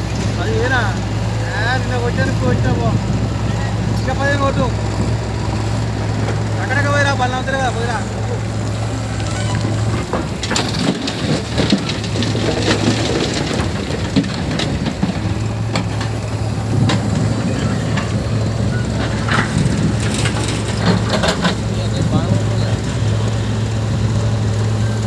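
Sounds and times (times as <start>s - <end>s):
heavy diesel machinery engine: 0.0s - 25.0s
crunching and crackling: 4.2s - 23.8s.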